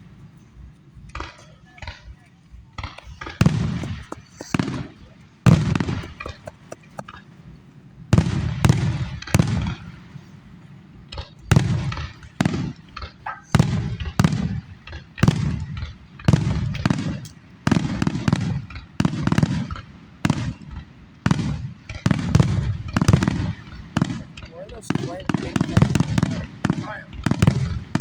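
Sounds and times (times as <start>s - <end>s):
fireworks bursting: 0.0s - 28.0s
low rumbling echo: 3.0s - 13.0s.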